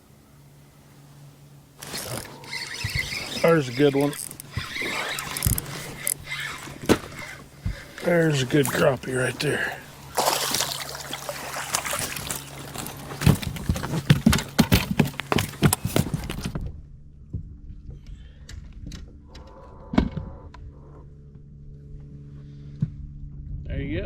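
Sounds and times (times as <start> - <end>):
steady low hum: 0.0 - 24.0
knocks and thuds in boat: 2.3 - 17.6.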